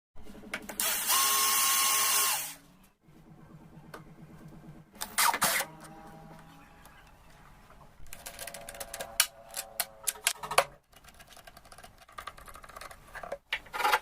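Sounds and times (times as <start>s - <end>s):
power drill running: 0.8s - 2.6s.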